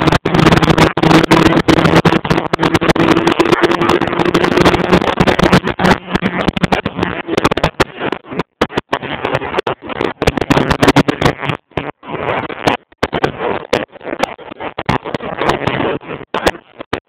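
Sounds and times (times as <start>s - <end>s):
car engine drone: 0.0s - 8.0s
wind buffeting phone microphone: 0.0s - 8.1s.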